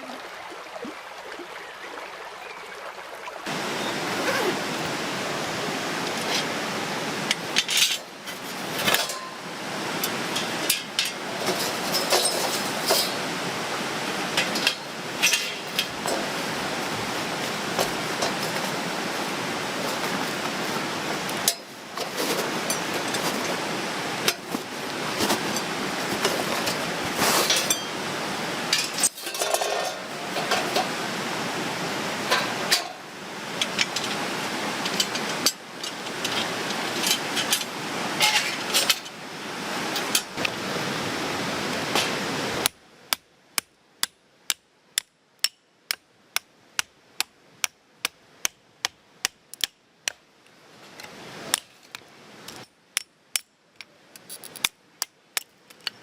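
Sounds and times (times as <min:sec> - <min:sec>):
steady rushing noise: 0:03.4 - 0:29.0.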